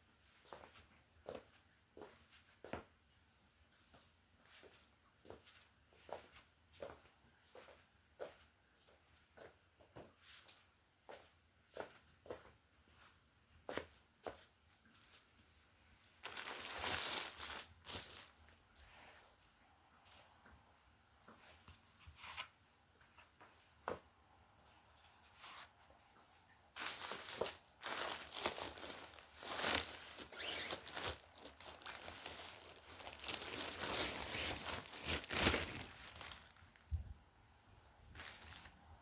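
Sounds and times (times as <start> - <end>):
packaging rustling and tearing: 16.2 - 18.4, 26.8 - 36.8.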